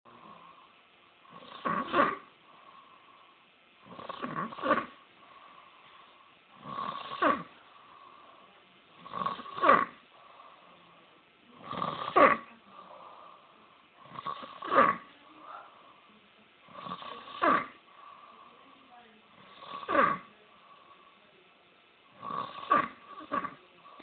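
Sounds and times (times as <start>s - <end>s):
man snoring loudly: 1.3s - 2.3s, 3.8s - 5.0s, 6.6s - 7.5s, 9.0s - 10.0s, 11.6s - 12.5s, 14.0s - 15.0s, 16.7s - 17.8s, 19.4s - 20.3s, 22.2s - 24.0s.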